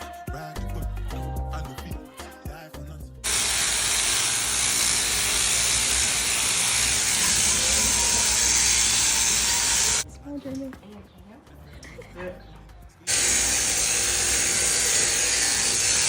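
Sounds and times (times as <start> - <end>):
background music: 0.0 - 3.6, 7.4 - 16.0
loud steady hiss: 3.2 - 10.0, 13.1 - 16.0.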